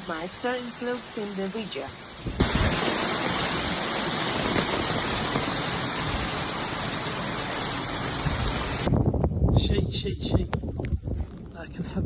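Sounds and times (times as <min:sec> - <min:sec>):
heavy hail falling: 0:00.0 - 0:08.9.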